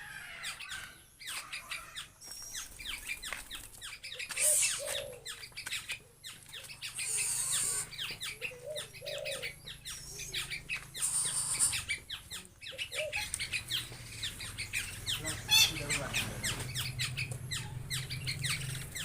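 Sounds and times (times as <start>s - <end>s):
high downward-sweeping bird chirps: 0.3s - 19.0s.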